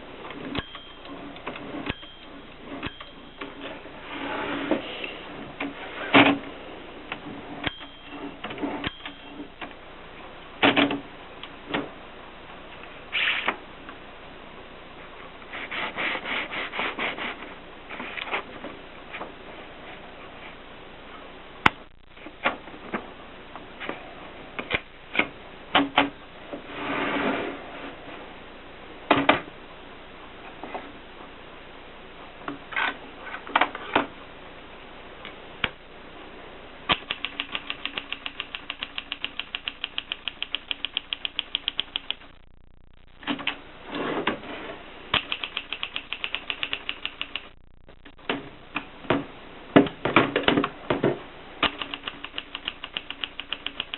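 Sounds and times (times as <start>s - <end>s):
typewriter key clicks: 36.9s - 42.2s, 45.2s - 47.4s.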